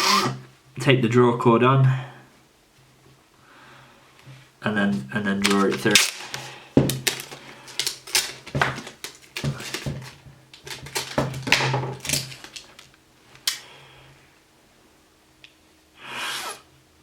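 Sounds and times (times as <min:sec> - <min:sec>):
sticky tape crackling and rustling: 0:05.3 - 0:13.6.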